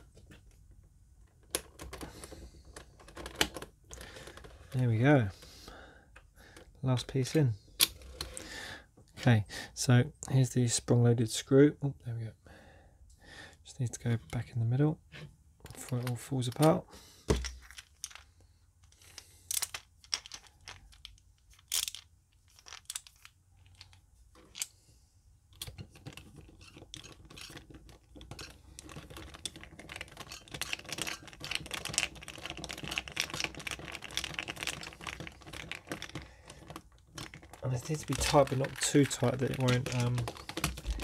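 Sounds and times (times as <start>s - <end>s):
plastic puzzle cube clicking: 25.6s - 41.0s.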